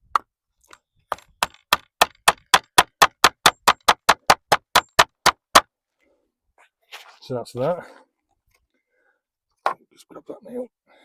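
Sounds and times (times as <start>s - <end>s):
hammer driving nail into timber: 0.1s - 5.7s.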